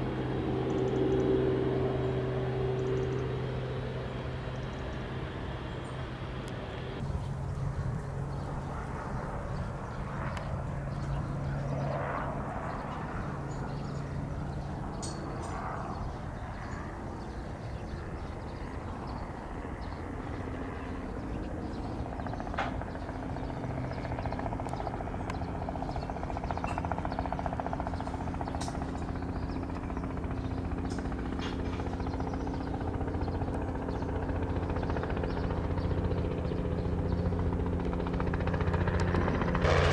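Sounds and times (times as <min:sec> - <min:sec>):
helicopter engine and rotor hum: 0:00.0 - 0:39.9.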